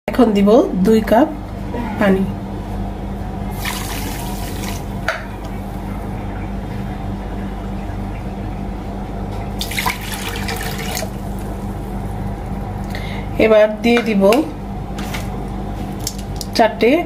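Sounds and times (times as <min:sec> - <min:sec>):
steady low hum: 0:00.1 - 0:17.0
water pouring into a pot: 0:03.5 - 0:04.9, 0:09.6 - 0:11.2.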